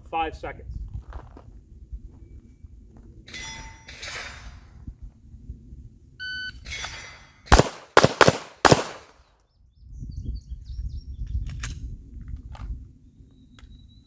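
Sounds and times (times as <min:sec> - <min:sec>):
handgun shots: 0:07.5 - 0:09.1.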